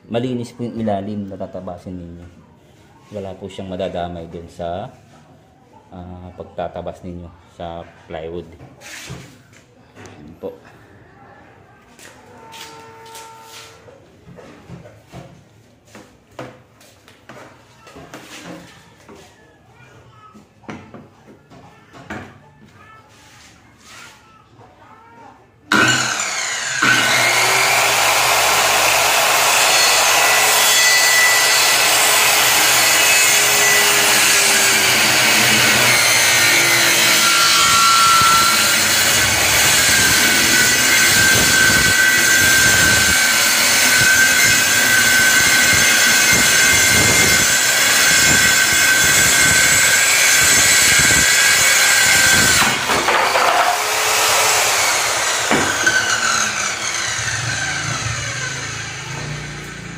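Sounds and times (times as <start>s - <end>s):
circular saw cutting plywood: 25.7s - 59.9s.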